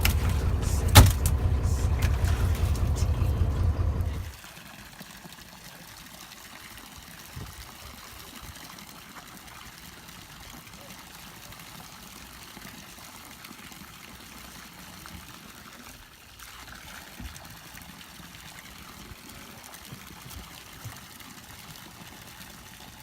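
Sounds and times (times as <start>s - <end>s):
low thumps: 0.0s - 4.3s
water trickling and pouring: 0.0s - 23.0s.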